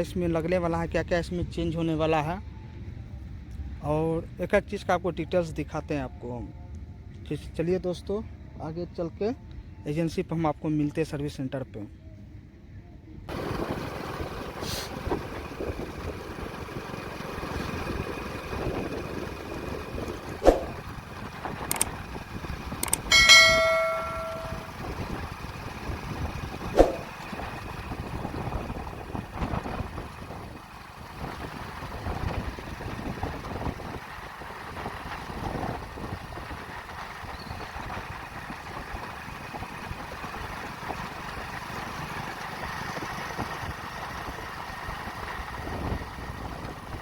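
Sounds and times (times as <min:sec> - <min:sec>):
motorcycle engine running: 0:13.3 - 0:47.0
ride noise: 0:13.3 - 0:47.0
road noise rumble: 0:13.3 - 0:47.0.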